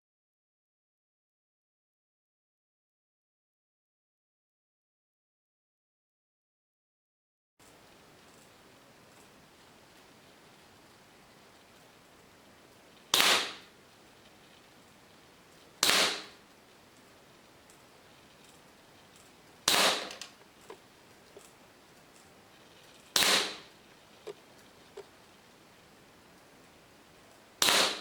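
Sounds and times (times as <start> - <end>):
faint ticks: 7.6 - 27.6
airsoft pistol shots: 13.1 - 13.7, 15.8 - 16.4, 19.7 - 20.3, 23.2 - 23.7, 27.6 - 28.0.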